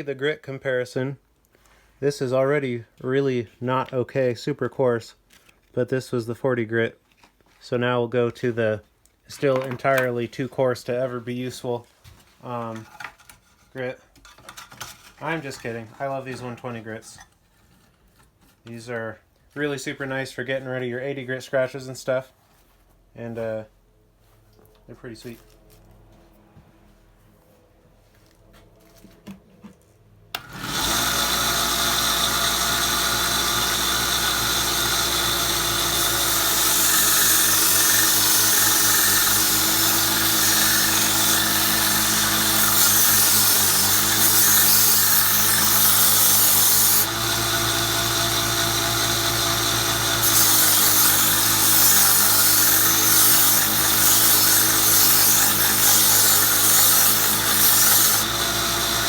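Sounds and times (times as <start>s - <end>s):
belt sander running: 30.4s - 59.0s
blade grinding on sanding belt: 30.4s - 59.0s.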